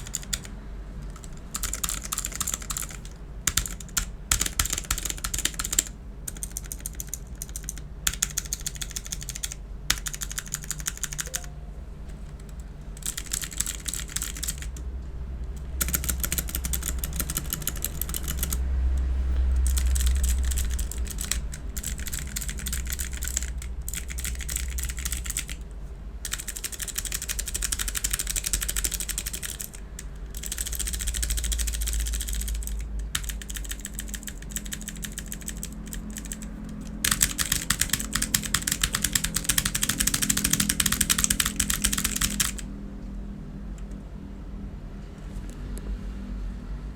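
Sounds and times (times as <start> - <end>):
fast typing on clicky keyboard: 0.0 - 11.5, 12.3 - 14.8, 15.6 - 18.6, 19.6 - 25.6, 26.2 - 42.7
low rumble: 18.6 - 22.0.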